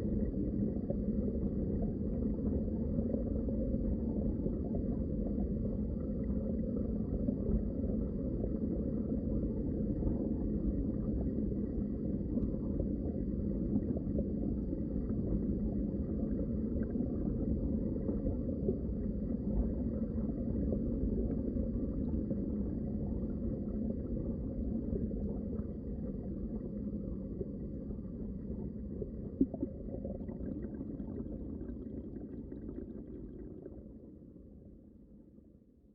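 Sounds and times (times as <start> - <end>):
underwater rush of water: 21.7 - 34.2.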